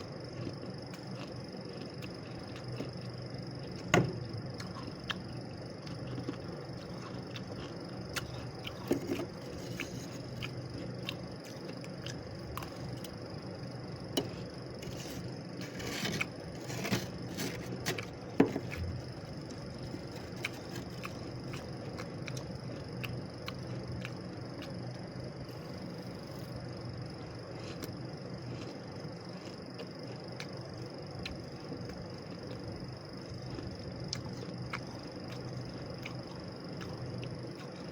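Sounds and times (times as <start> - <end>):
steady background hum: 0.0 - 37.9
freezer frost scraping and crunching: 8.2 - 10.5, 14.8 - 21.6.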